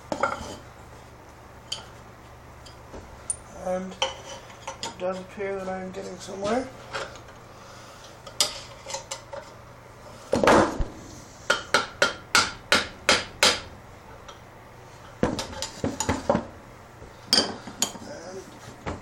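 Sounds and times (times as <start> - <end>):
hammer tapping metal: 11.5 - 13.7.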